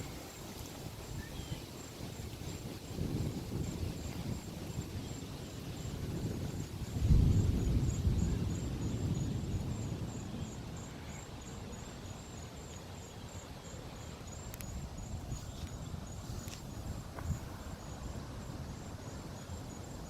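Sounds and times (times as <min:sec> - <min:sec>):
crickets chirping: 0:00.0 - 0:20.0
distant thunder rumble: 0:05.9 - 0:10.9
faint ticks: 0:14.5 - 0:17.4.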